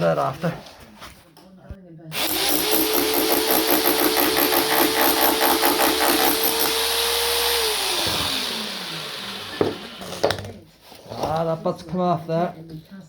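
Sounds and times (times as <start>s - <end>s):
hammer drill hammering concrete: 2.1s - 10.4s
drill motor whine: 2.2s - 10.2s.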